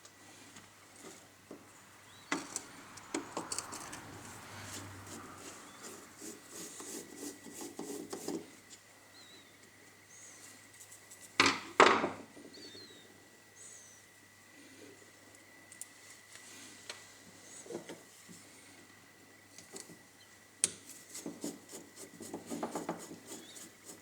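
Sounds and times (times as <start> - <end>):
hand tools and metal parts rattling: 2.4 - 6.0.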